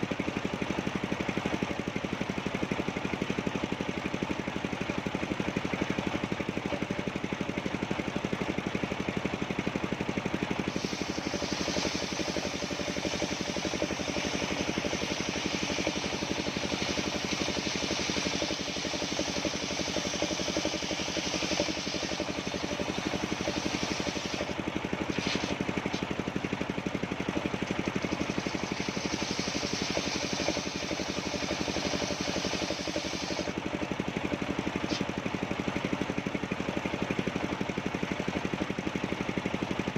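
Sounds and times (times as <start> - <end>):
sawmill engine running: 0.0 - 39.9
saw cutting through wood: 10.6 - 26.1, 28.0 - 33.6.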